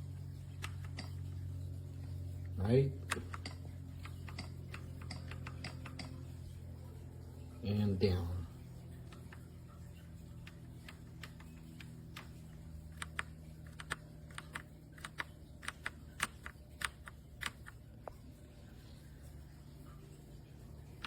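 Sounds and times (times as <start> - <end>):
keyboard key clicks: 13.0 - 17.8.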